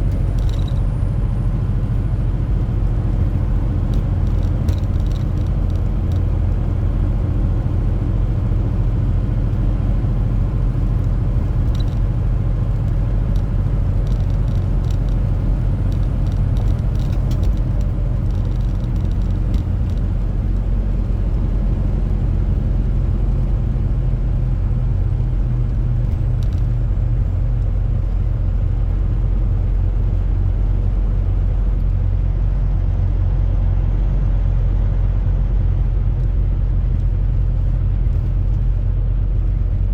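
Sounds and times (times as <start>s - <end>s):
diesel engine rumbling: 0.0s - 39.9s
faint ticks: 11.0s - 12.1s.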